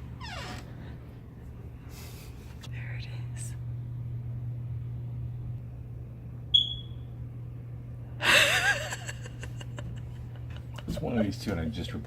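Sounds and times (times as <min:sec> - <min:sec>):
steady low hum: 0:00.0 - 0:12.0
smoke alarm chirp: 0:06.5 - 0:07.1.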